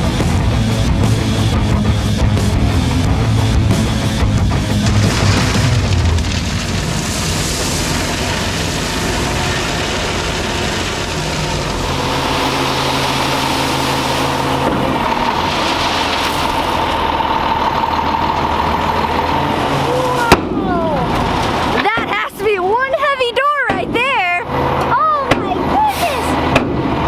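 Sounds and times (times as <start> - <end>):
steady high whine: 0.0 - 19.2
diesel truck engine running: 0.0 - 27.0.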